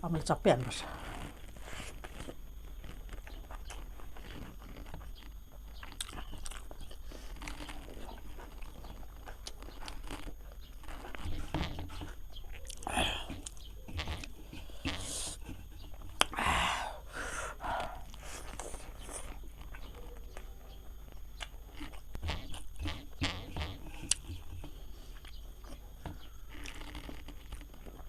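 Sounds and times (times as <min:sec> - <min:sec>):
person chewing food: 0:01.0 - 0:28.0.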